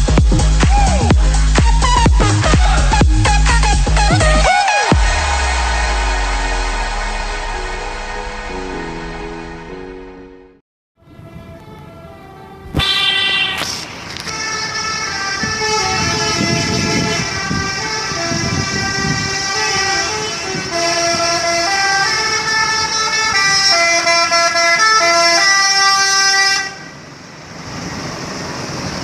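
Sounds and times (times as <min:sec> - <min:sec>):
multi-tone bus air horn tune: 0:01.6 - 0:27.0
low rumble: 0:05.0 - 0:10.6.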